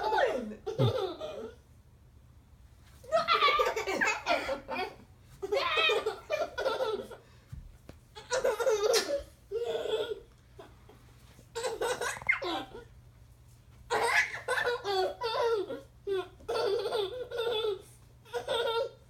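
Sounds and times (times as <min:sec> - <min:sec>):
laughing and giggling: 0:00.0 - 0:01.6, 0:03.1 - 0:07.2.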